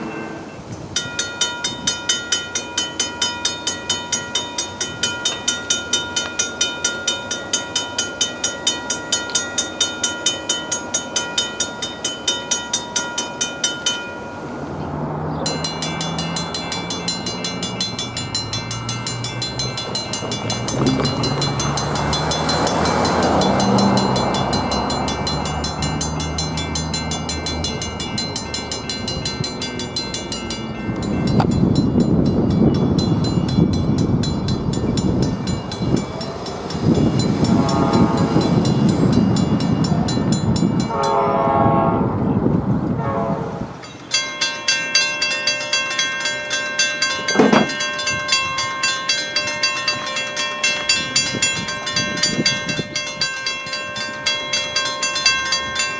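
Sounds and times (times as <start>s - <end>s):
train horn: 0.0s - 0.7s, 37.3s - 38.8s, 40.8s - 43.8s
passing train rumble: 0.0s - 55.9s
railroad crossing bell ringing: 0.0s - 55.9s
train engine hum: 0.0s - 55.9s.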